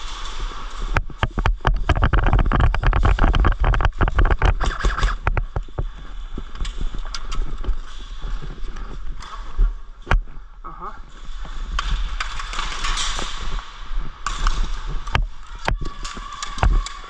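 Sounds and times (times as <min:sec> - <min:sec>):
wind rumble on microphone: 0:00.0 - 0:10.2
irregular clicks and knocks: 0:00.9 - 0:05.9.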